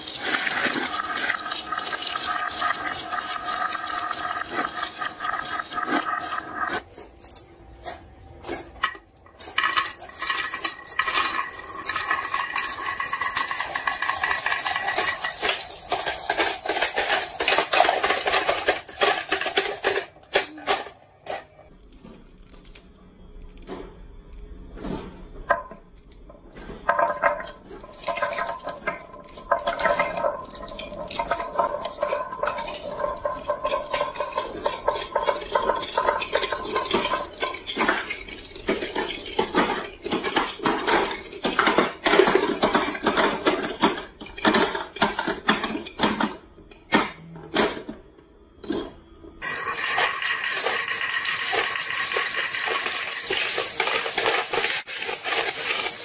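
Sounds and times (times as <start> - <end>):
marbles rolling down wooden run: 0.0 - 6.9, 8.8 - 20.9, 26.8 - 45.5, 49.4 - 56.0.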